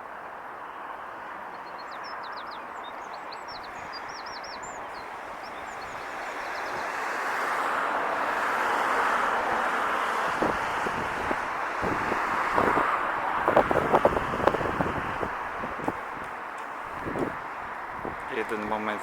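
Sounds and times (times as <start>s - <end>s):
traffic noise: 0.0s - 19.0s
vehicle passing: 4.6s - 19.0s.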